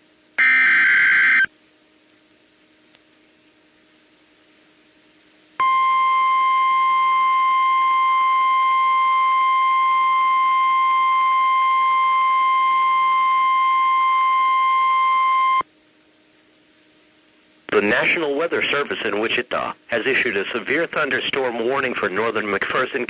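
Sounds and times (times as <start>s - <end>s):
steady high-pitched alarm beep: 0.4s - 1.5s, 5.6s - 15.6s.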